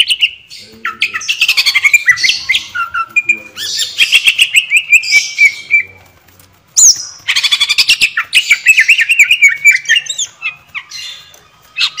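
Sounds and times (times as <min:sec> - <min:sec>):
bird singing whistles and chirps: 0:06.8 - 0:11.2.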